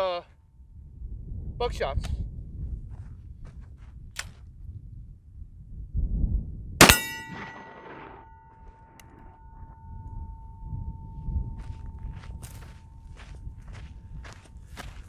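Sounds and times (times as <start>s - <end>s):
shotgun shot: 6.8s - 8.9s
steel target ringing: 6.8s - 13.7s.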